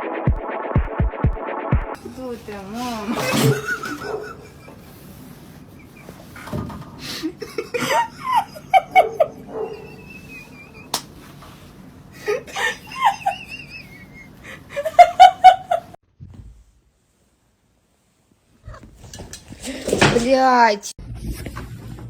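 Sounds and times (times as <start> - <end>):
laughter: 3.2 - 5.1, 7.0 - 11.0, 12.2 - 16.0.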